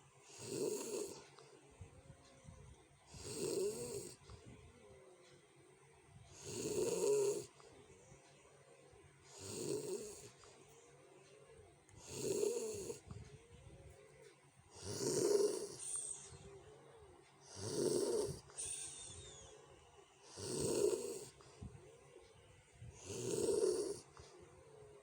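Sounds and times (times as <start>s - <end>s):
person snoring loudly: 0.3s - 1.2s, 3.1s - 4.2s, 6.4s - 7.5s, 9.3s - 10.4s, 12.0s - 13.1s, 14.7s - 16.3s, 17.4s - 19.0s, 20.3s - 21.4s, 23.0s - 24.1s
faint breathing: 6.2s - 25.0s.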